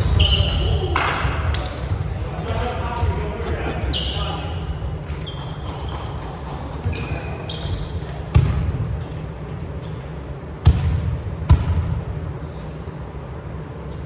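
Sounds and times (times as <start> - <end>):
shoe squeaks: 0.0 - 1.1, 3.9 - 8.4
volleyball smacks echoing: 8.3 - 8.9, 10.6 - 12.0.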